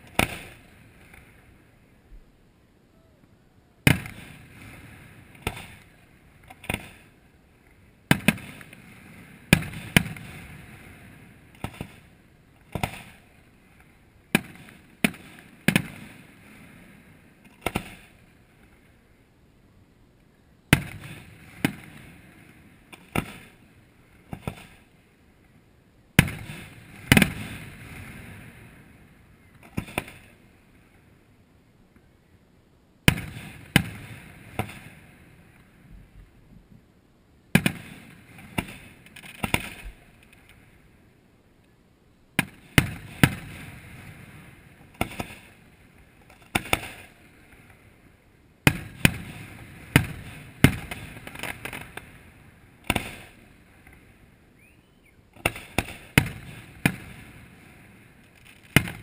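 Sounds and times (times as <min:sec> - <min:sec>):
fireworks bursting with booms: 0:00.0 - 0:01.2, 0:03.8 - 0:07.2, 0:08.0 - 0:13.4, 0:14.3 - 0:18.4, 0:20.7 - 0:25.0, 0:26.2 - 0:30.6, 0:33.0 - 0:36.7, 0:37.5 - 0:40.1, 0:42.4 - 0:47.9, 0:48.6 - 0:54.2, 0:55.3 - 0:59.0.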